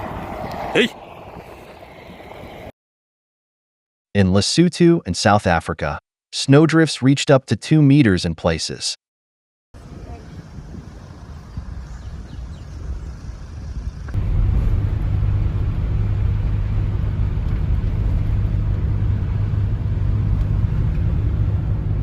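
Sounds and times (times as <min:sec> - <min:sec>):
vehicle engine and road noise: 0:00.0 - 0:02.7, 0:09.8 - 0:22.0.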